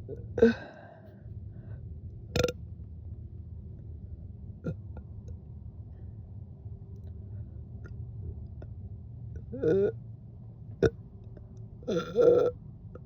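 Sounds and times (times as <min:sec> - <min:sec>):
steady low hum: 0:00.0 - 0:13.0
woman burping: 0:00.4 - 0:00.7, 0:09.6 - 0:10.0, 0:11.9 - 0:12.5.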